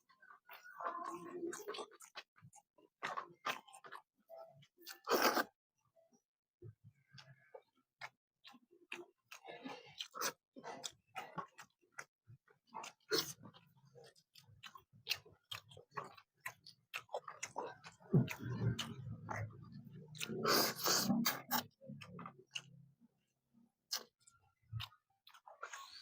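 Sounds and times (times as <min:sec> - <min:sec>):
wet chewing smacks: 0:14.4 - 0:22.7.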